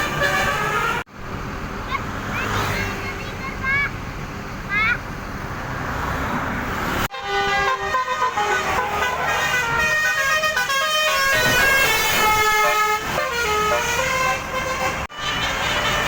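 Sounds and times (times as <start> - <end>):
multi-trumpet bus horn tune: 0.0 - 1.1, 7.1 - 16.0.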